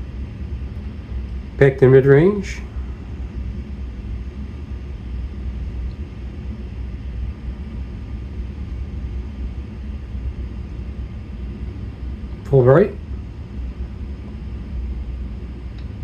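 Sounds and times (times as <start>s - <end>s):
low rumble with faint hiss: 0.0s - 16.0s.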